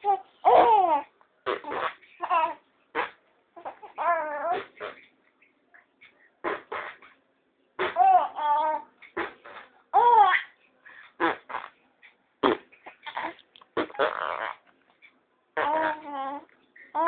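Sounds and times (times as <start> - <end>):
baby laughing: 0.0 - 2.6, 3.6 - 5.0, 7.8 - 10.6, 12.8 - 14.5, 15.6 - 17.0.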